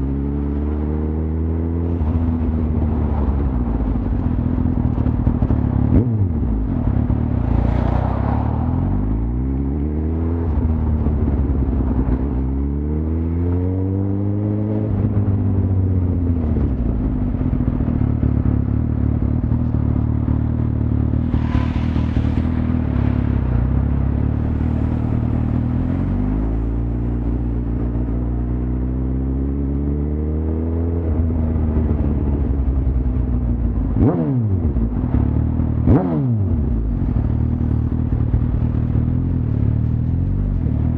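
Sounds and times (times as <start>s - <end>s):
motorcycle engine revving: 0.0s - 40.9s.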